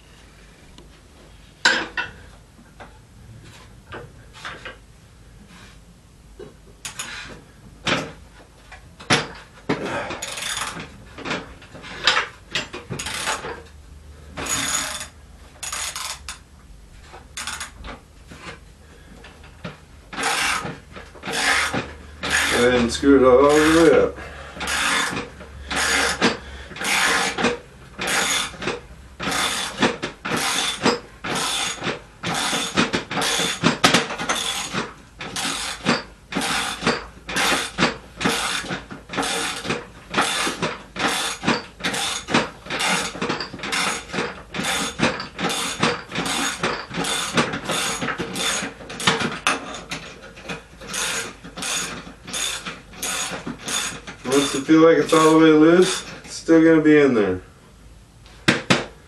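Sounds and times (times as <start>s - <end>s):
ratchet wrench clicking: 14.5s - 16.4s, 17.4s - 17.7s.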